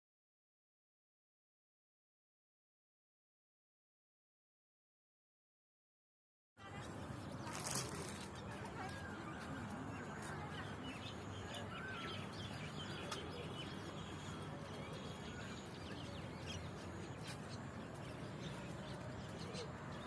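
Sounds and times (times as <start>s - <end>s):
road traffic hum: 6.6s - 20.0s
small birds chirping: 6.6s - 20.0s.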